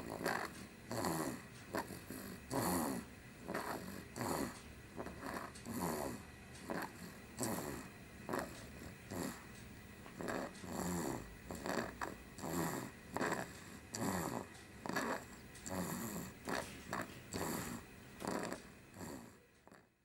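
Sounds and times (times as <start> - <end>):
child snoring: 0.0 - 9.6, 10.2 - 19.9.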